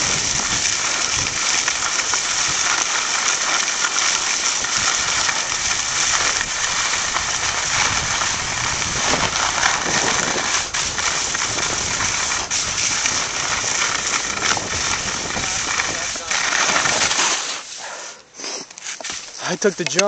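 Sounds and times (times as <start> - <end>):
wind over microphone: 0.0 - 2.6, 4.6 - 17.1
skis on snow: 0.0 - 20.0.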